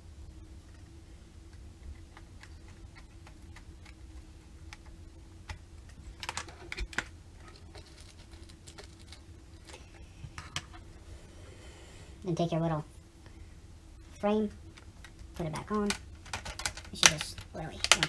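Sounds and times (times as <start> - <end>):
plastic parts clicking and tapping: 1.5 - 10.8, 14.8 - 18.0.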